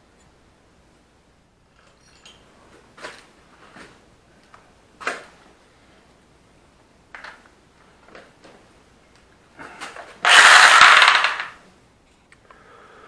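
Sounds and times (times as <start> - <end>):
loud scrape: 10.2 - 11.6.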